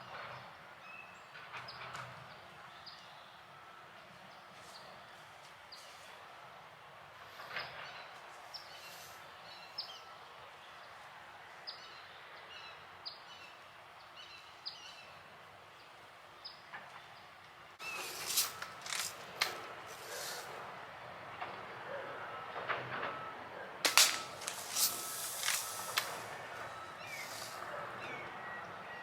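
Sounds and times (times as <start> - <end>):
songbird chirps: 4.2 - 6.2, 24.1 - 29.0
steady background hiss: 17.3 - 21.3, 23.8 - 28.9.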